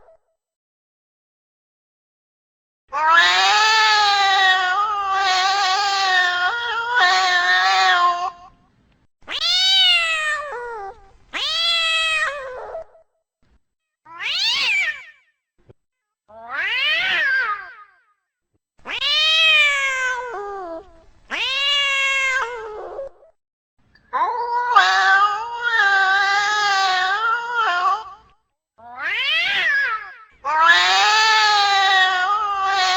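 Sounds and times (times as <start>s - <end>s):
cat meowing: 2.9s - 8.5s, 9.3s - 12.9s, 14.1s - 15.1s, 16.3s - 17.9s, 18.9s - 23.2s, 24.1s - 32.9s.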